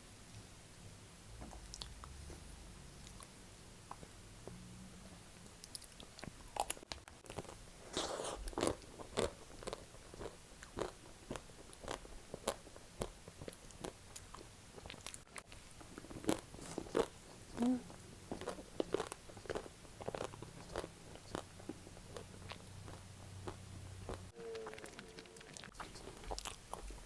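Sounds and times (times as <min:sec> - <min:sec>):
crunching and chewing ice cream: 0:05.6 - 0:27.0.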